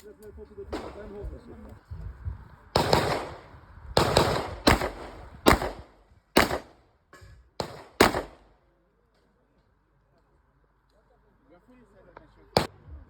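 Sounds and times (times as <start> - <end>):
gunshots: 0.7 - 1.2, 2.8 - 6.8, 7.6 - 8.5.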